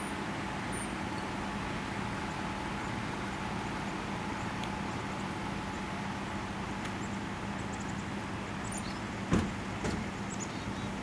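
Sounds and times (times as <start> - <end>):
sharp knock: 9.3 - 10.1.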